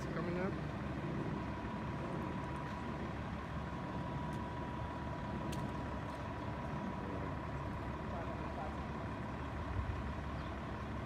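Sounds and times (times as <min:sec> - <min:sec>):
faint steady whine: 0:00.0 - 0:11.0
vehicle engines idling: 0:00.0 - 0:11.0.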